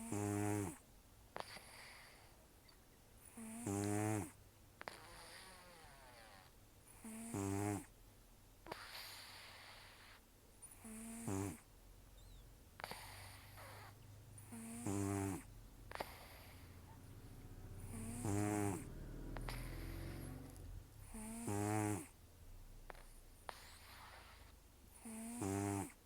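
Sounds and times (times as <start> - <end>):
cat snoring: 0.0 - 0.8, 1.4 - 2.4, 3.2 - 8.0, 8.6 - 26.0
cat breathy exhale: 12.8 - 14.0, 15.9 - 21.3.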